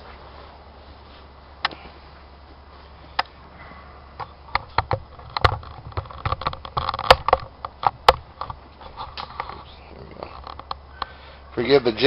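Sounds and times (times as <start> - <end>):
tripod clicks and knocks: 4.2 - 9.6, 10.3 - 11.1.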